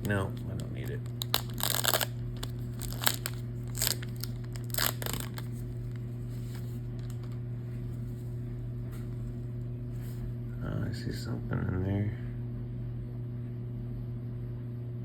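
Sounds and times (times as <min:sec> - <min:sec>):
card pack wrapper tearing: 0:00.0 - 0:07.4
steady low hum: 0:00.0 - 0:15.0.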